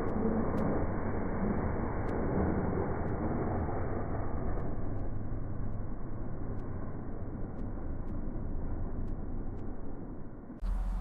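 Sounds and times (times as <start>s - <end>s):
diesel engine running: 10.6s - 11.0s.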